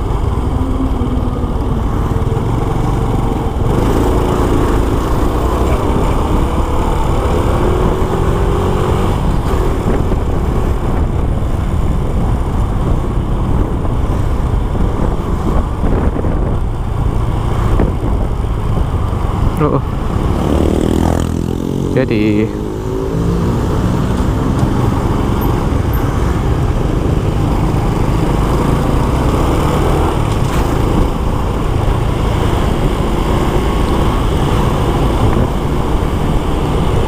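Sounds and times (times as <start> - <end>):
wind rumble: 0.0 - 37.0.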